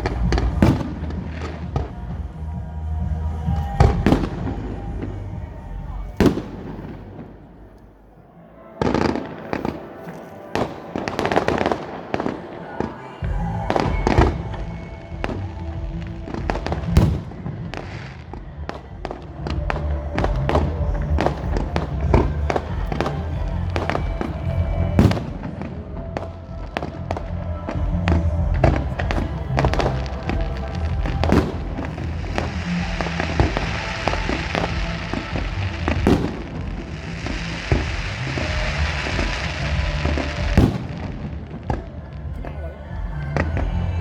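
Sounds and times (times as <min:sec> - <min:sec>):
fireworks bangs and crackles: 0:00.0 - 0:07.9, 0:08.7 - 0:44.0.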